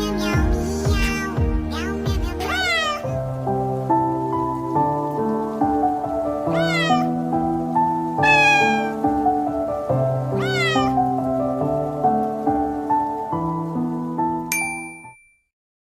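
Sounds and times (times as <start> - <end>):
background music of sustained chords: 0.0 - 14.5
cat meowing: 2.3 - 3.2, 6.4 - 7.2, 8.2 - 9.2, 10.3 - 11.2.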